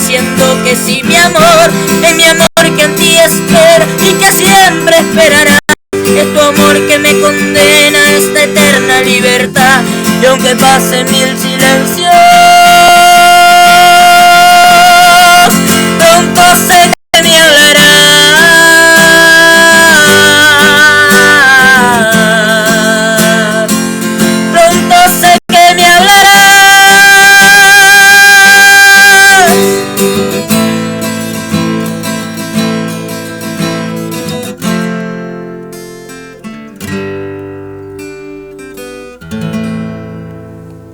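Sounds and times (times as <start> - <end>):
person singing with vibrato: 0.0 - 30.8
acoustic guitar: 0.0 - 40.9.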